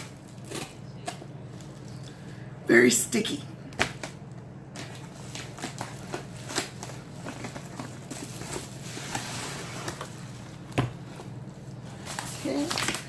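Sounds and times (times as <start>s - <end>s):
packaging crackling and crinkling: 3.8s - 13.0s.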